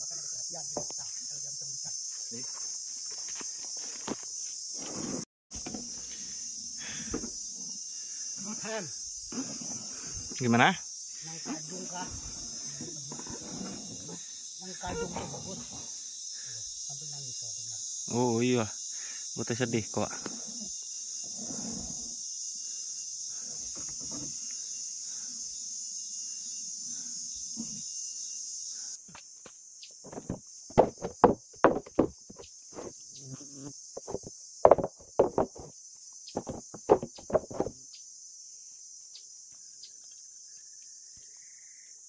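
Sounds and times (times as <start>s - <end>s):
high drone of insects: 0.0s - 42.0s
sharp irregular knocks: 30.0s - 32.4s, 34.0s - 35.7s, 36.3s - 37.8s.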